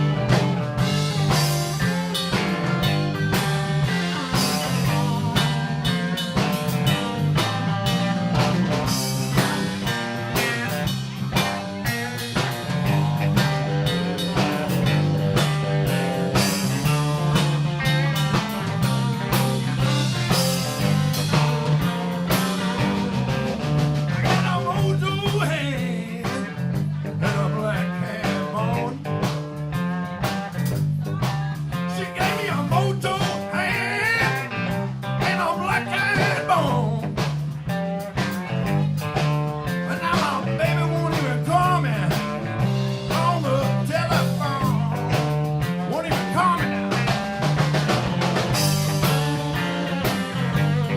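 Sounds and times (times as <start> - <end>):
blues band playing: 0.0 - 50.9
lead guitar with bending notes: 0.0 - 50.9.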